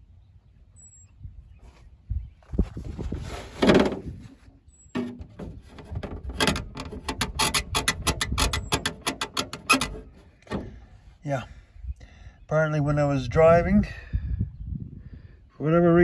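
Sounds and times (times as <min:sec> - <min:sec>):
rustle: 0:00.8 - 0:05.9.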